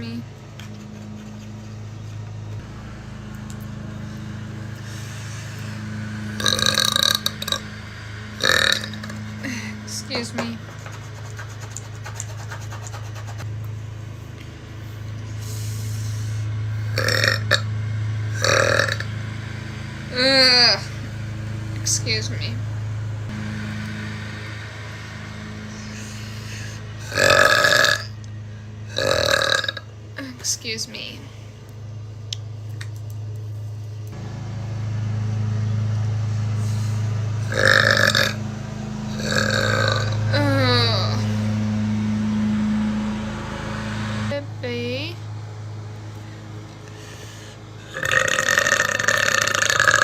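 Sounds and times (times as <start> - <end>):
steady low hum: 0.0 - 50.0
woman belching: 6.4 - 7.6, 17.0 - 17.6, 18.4 - 19.0, 27.1 - 28.1, 29.0 - 29.8, 37.5 - 38.4, 39.2 - 41.0, 47.9 - 50.0
person burping: 17.0 - 17.6, 27.1 - 28.1, 29.0 - 29.8, 47.9 - 50.0.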